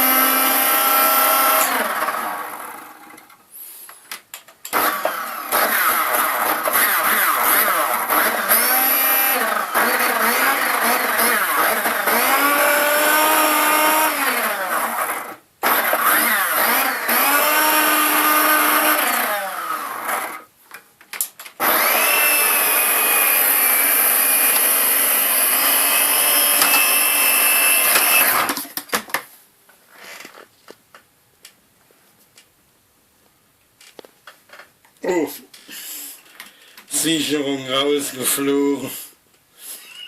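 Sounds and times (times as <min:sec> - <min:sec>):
vacuum cleaner motor whining: 0:00.0 - 0:03.3, 0:04.7 - 0:20.5, 0:21.6 - 0:28.6.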